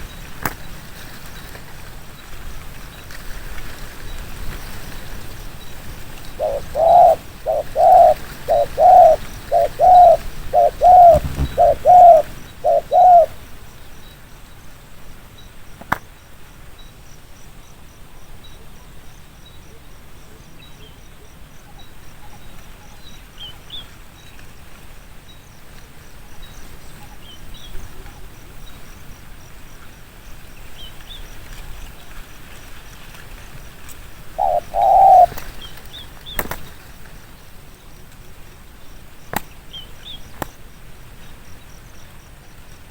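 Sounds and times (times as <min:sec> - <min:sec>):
small birds chirping: 0:05.6 - 0:14.2, 0:34.3 - 0:36.7
dove cooing: 0:06.3 - 0:13.4, 0:34.3 - 0:35.5.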